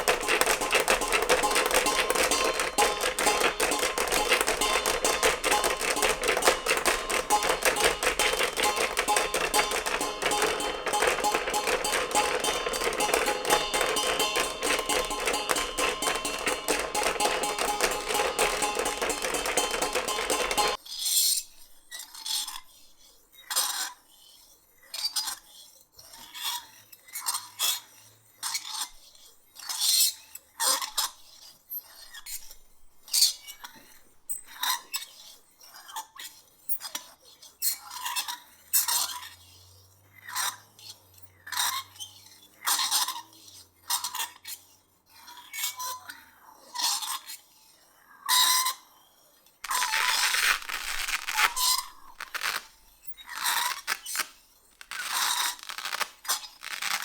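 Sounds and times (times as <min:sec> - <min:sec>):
cutlery clinking against dish: 0:00.0 - 0:20.8
dense rapid clatter: 0:00.0 - 0:20.8.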